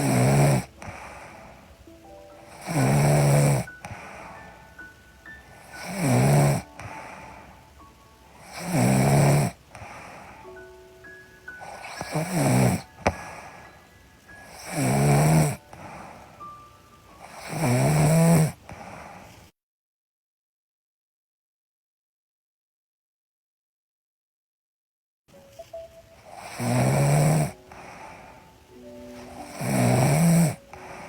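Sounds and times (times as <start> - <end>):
woman snoring: 0.0 - 1.6, 2.4 - 4.5, 5.4 - 7.5, 8.4 - 10.4, 11.6 - 13.7, 14.4 - 16.4, 17.2 - 19.2, 26.2 - 28.4, 29.1 - 31.0.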